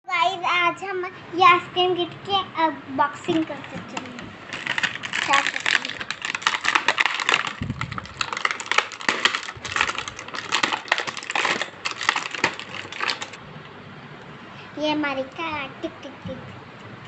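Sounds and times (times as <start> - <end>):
plastic crackling and clicking: 3.2 - 13.4.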